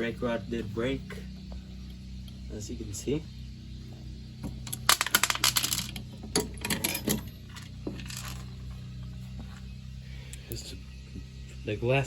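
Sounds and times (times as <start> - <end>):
glass rod clinks and rattles: 4.6 - 8.6.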